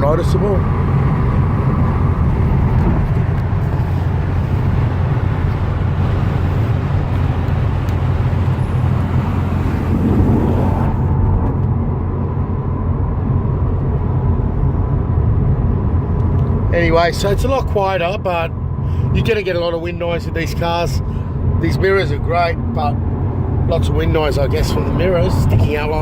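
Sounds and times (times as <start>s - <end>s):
wind rushing: 0.6s - 13.2s.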